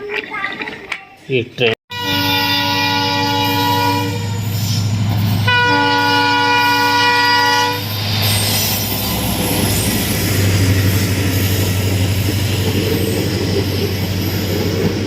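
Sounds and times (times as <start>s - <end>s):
toy train horn blasts: 1.9s - 4.5s, 5.5s - 7.9s.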